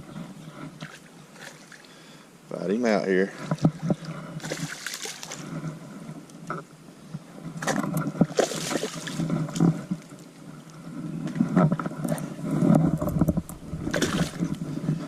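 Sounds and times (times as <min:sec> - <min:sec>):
water splashing and sloshing: 0:00.5 - 0:02.0, 0:03.3 - 0:06.2, 0:07.5 - 0:15.0
fish thrashing at surface: 0:04.4 - 0:05.4, 0:07.6 - 0:09.8, 0:12.7 - 0:14.7.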